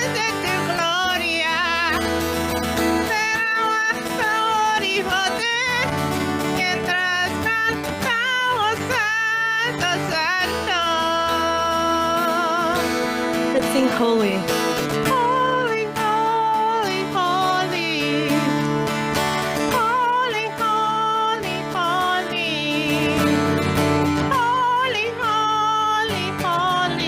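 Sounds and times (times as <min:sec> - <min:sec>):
voices singing: 0:00.0 - 0:02.1
acoustic guitar: 0:00.0 - 0:27.0.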